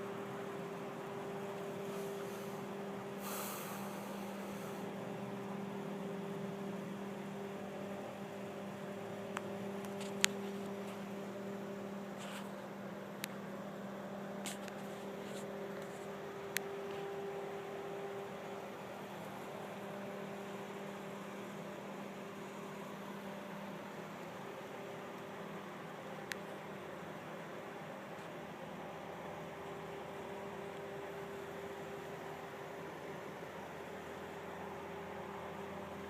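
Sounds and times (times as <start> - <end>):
droning mechanical hum: 0.0 - 36.0
brief hiss: 1.8 - 4.8.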